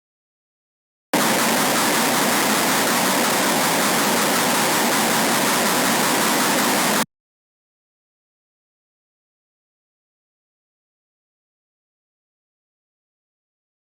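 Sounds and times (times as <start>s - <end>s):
dense static noise: 1.2s - 7.0s.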